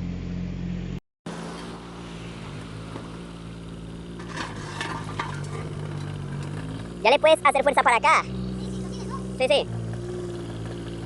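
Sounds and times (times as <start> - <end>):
excavator diesel engine running: 0.0 - 11.0
debris knocking: 4.1 - 6.8.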